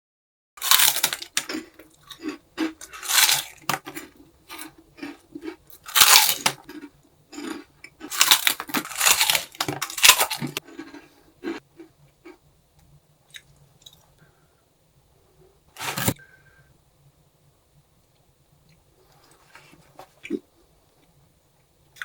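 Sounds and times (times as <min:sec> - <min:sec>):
snack crunching: 0:00.6 - 0:12.4, 0:15.8 - 0:16.2
soft chewing: 0:00.8 - 0:14.3.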